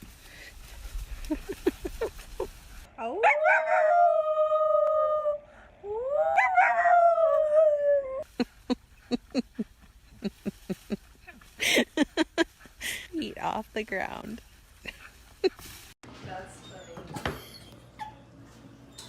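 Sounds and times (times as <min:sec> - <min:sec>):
dog howling: 0:06.0 - 0:08.2.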